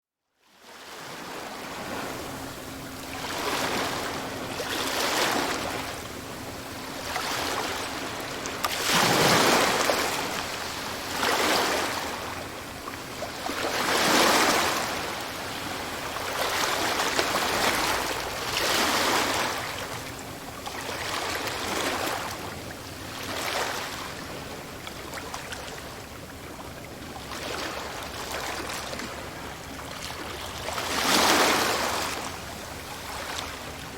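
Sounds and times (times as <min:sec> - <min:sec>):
sea waves washing onto shore: 0:01.0 - 0:22.5.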